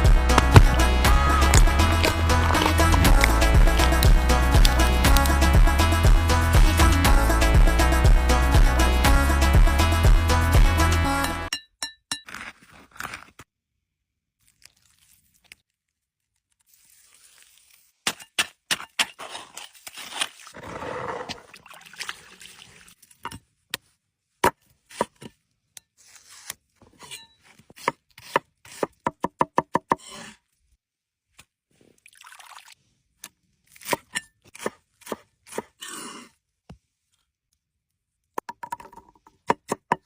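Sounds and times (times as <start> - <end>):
food preparation knocks and clicks: 0.3 - 5.4.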